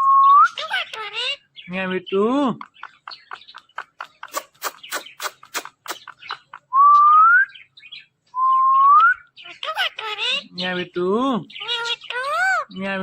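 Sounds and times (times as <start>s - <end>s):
parrot harsh call: 4.2s - 6.4s.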